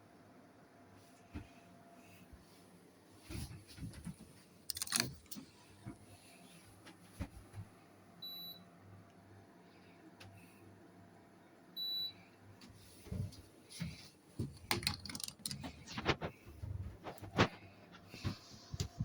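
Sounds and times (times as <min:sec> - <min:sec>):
faint steady hum: 0:00.0 - 0:19.0
clicks and clattering handling: 0:03.7 - 0:06.0, 0:14.4 - 0:16.3.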